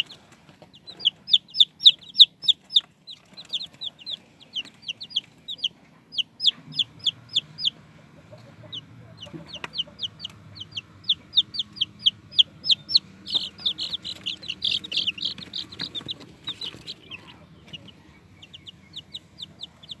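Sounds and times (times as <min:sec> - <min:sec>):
chicks peeping: 0:00.0 - 0:20.0.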